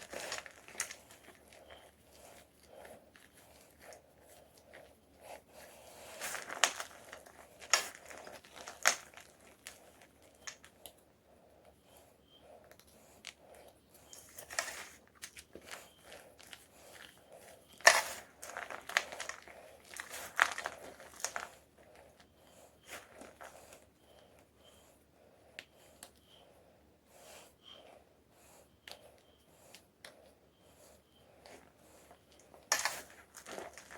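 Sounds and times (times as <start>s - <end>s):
chalk crunching and crumbling: 0.0s - 10.7s, 14.1s - 23.9s, 30.8s - 33.9s.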